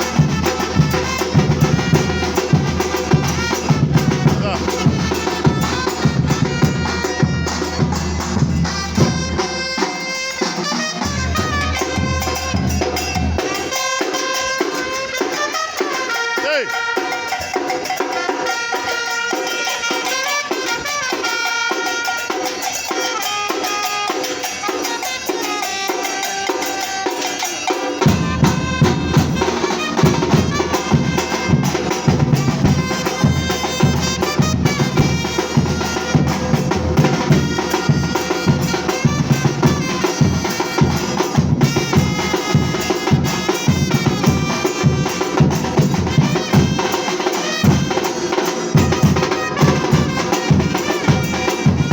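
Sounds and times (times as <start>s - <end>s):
bass drums in fast groove: 0.0s - 9.6s, 28.0s - 47.0s, 47.6s - 51.9s
light percussion: 0.0s - 51.9s.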